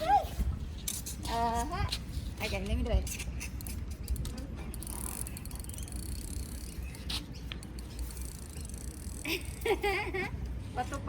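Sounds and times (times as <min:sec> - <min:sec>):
fishing reel clicking: 0:04.2 - 0:06.9.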